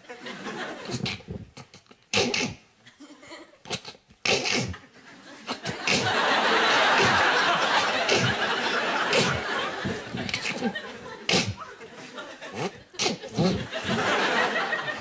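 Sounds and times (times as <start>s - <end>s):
studio audience laughing: 0.0s - 1.2s, 4.9s - 15.0s
short vocal sound effects: 7.8s - 8.4s, 9.1s - 11.7s, 12.5s - 14.1s.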